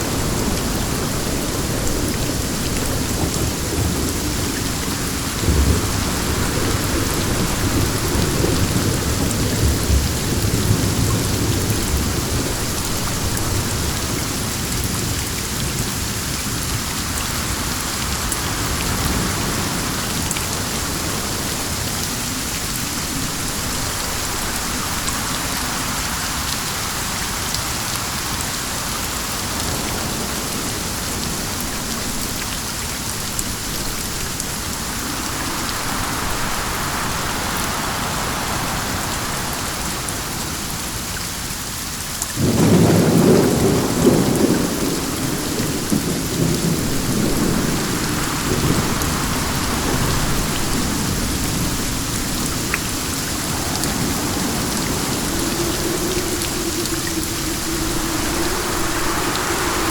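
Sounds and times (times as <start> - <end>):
steady rain falling: 0.0 - 59.9
deep roll of thunder: 42.4 - 59.9.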